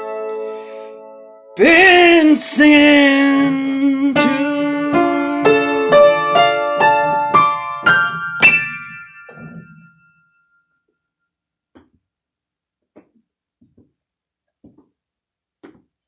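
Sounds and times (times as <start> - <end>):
piano notes: 0.0 - 11.0
faint tap: 14.6 - 14.9, 15.6 - 15.9.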